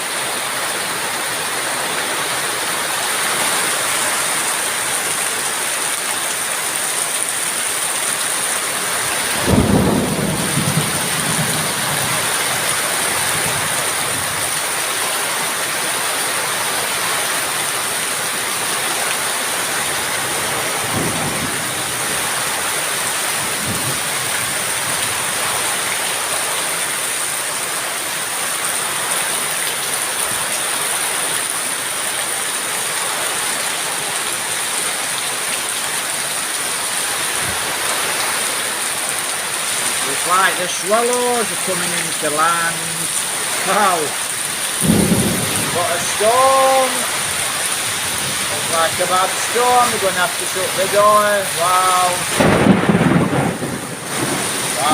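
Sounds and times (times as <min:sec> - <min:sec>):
heavy rain: 0:00.0 - 0:54.9
thunder crack and rumble: 0:09.4 - 0:12.6, 0:20.8 - 0:22.0, 0:23.6 - 0:24.6, 0:44.8 - 0:46.1, 0:52.2 - 0:54.9.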